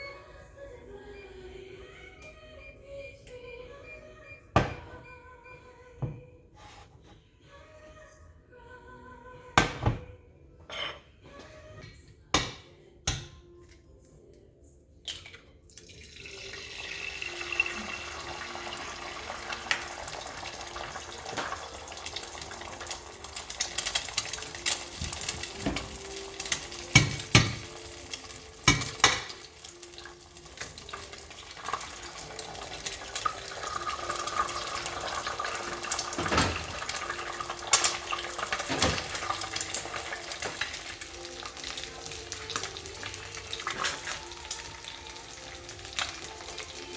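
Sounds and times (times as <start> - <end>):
utensils and dishes clinking: 15.1 - 46.9.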